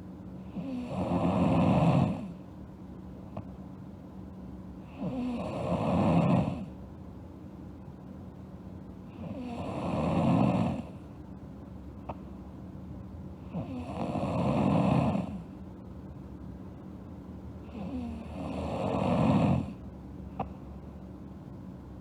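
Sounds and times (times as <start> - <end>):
girl snoring: 0.5 - 2.4, 4.9 - 6.7, 9.1 - 11.0, 13.5 - 15.4, 17.7 - 19.8
quiet breathing: 17.6 - 19.8.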